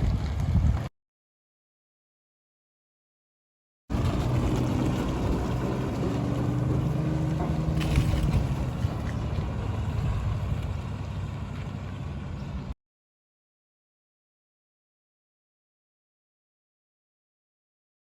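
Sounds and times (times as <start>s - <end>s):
wind noise on microphone: 0.0s - 0.9s, 3.9s - 11.5s
diesel engine running: 3.9s - 12.7s.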